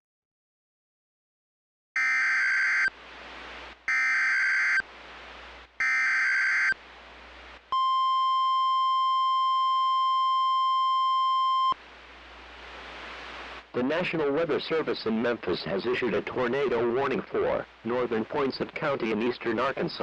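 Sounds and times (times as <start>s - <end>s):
faint hiss: 2.9s - 3.9s, 4.8s - 5.8s, 11.7s - 20.0s
steady single-pitch attention tone: 7.7s - 11.8s.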